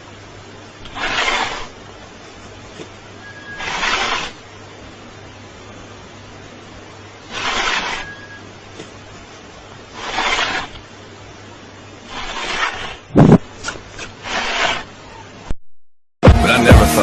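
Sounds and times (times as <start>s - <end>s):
animal blowing or hissing: 0.8s - 1.8s, 3.3s - 4.4s, 7.2s - 8.4s, 9.9s - 10.8s, 12.1s - 13.4s, 14.2s - 14.9s.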